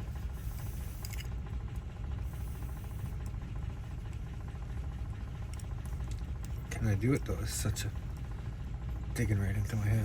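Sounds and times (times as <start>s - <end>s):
low engine-like rumble: 0.0s - 10.0s.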